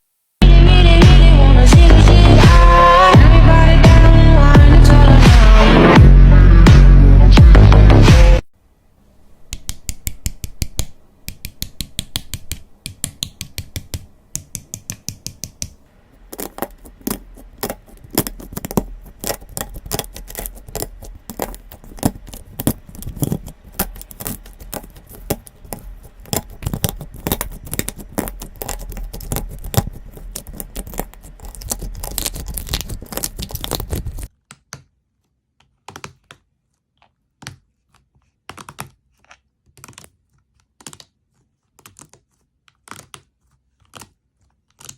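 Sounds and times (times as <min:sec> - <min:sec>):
slime crackling and clicking: 0:16.4 - 0:34.3.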